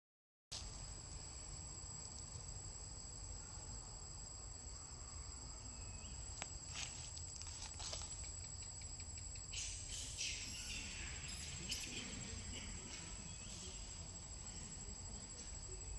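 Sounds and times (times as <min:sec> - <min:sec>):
high-pitched insect drone: 0:04.7 - 0:15.9.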